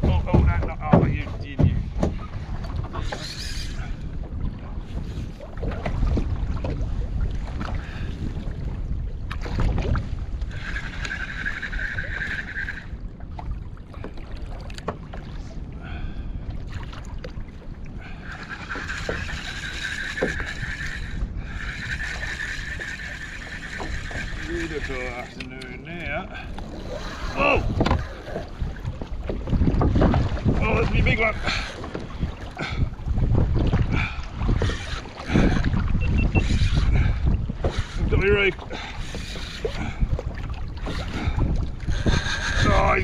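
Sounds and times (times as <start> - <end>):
water moving around kayak: 0.0 - 43.0
wind buffeting microphone: 0.0 - 43.0
fishing reel whirring: 10.5 - 12.9, 18.3 - 25.4, 26.6 - 28.2.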